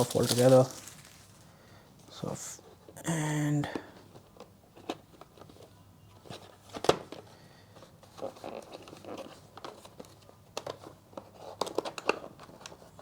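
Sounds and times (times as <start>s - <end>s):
box being handled: 0.0s - 1.4s
plastic wrap crinkling: 0.0s - 1.5s.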